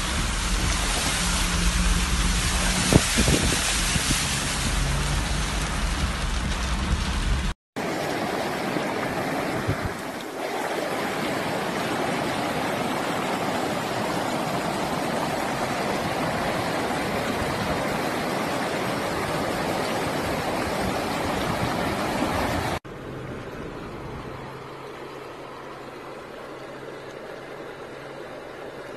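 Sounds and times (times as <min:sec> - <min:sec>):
low hum: 0:00.0 - 0:07.6
rainwater rushing: 0:00.0 - 0:28.9.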